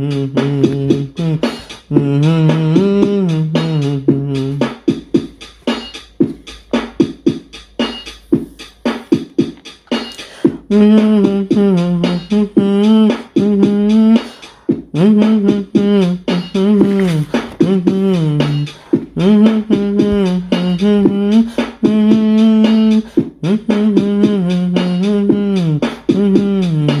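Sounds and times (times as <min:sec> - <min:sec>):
person singing long wavering notes: 0:00.0 - 0:04.6, 0:10.7 - 0:14.3, 0:15.0 - 0:27.0
beatboxing: 0:00.0 - 0:27.0.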